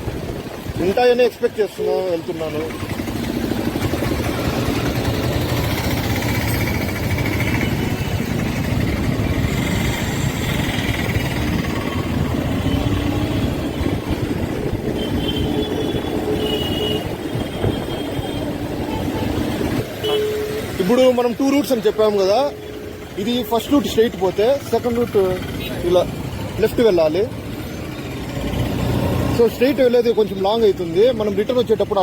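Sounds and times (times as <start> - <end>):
rushing wind noise: 0.0 - 1.0, 7.1 - 20.0
motorcycle engine running: 2.2 - 20.8.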